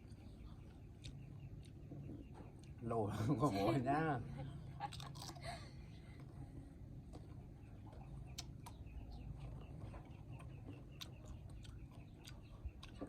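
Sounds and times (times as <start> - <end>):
low steady rumble: 0.0 - 13.0.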